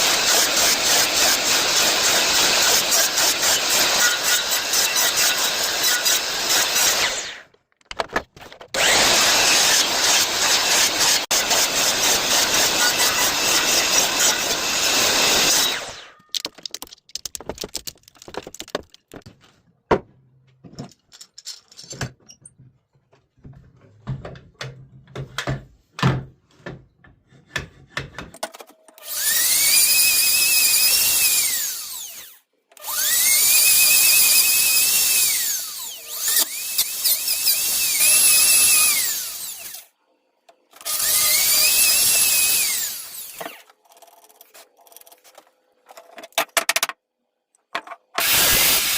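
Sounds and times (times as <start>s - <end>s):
loud noisy tool: 0.0s - 7.5s, 8.8s - 16.2s, 29.0s - 39.9s, 40.8s - 43.7s, 48.2s - 48.9s
power drill spinning: 0.0s - 7.6s, 8.5s - 19.2s, 29.0s - 39.9s, 40.7s - 46.2s, 48.2s - 48.9s.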